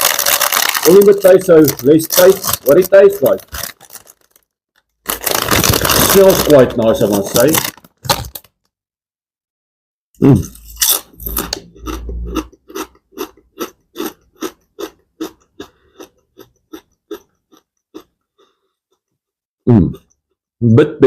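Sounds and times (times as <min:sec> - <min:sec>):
potato chip crunching: 0:00.0 - 0:08.5
chewing: 0:10.5 - 0:19.1.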